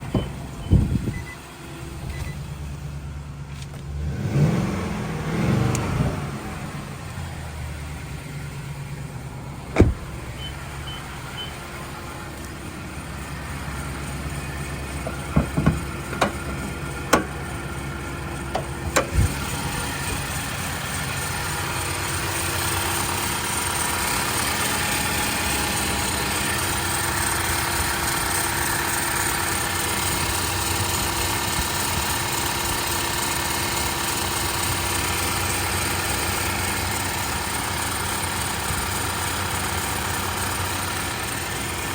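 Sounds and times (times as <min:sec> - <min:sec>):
vehicle engine running: 0:00.0 - 0:41.9
loud sharp knocks: 0:15.3 - 0:16.3.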